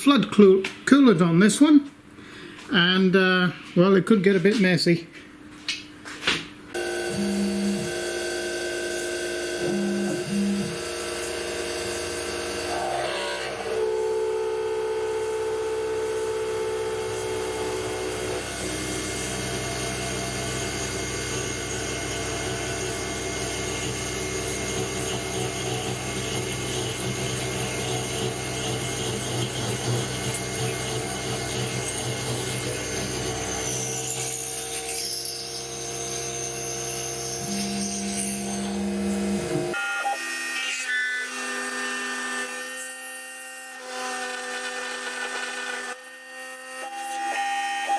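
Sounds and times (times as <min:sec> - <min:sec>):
rough cutting noise: 0:06.7 - 0:39.8
spindle motor whining: 0:06.8 - 0:34.6.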